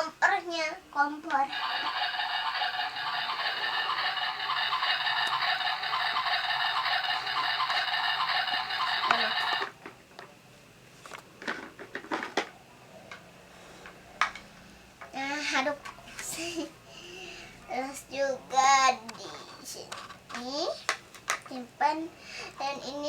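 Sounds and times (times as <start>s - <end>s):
toy electronic sound effect: 1.5s - 9.7s.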